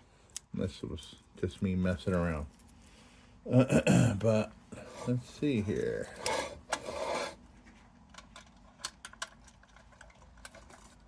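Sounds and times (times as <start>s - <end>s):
rubbing and rustling: 4.8s - 8.8s.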